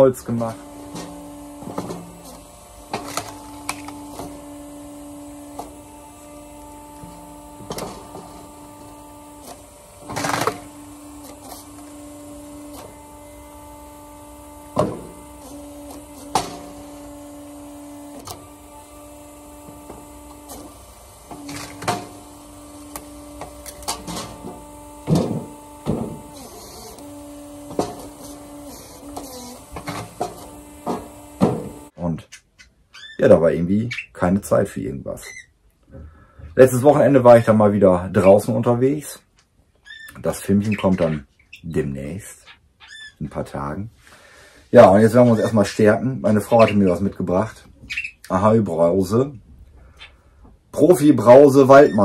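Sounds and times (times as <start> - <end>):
electric machine humming: 0.0 - 32.1, 36.2 - 39.3, 43.3 - 52.0.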